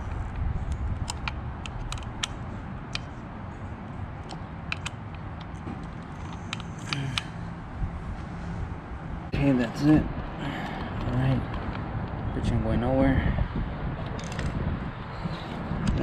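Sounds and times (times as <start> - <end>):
steady low rumble: 0.0 - 16.0.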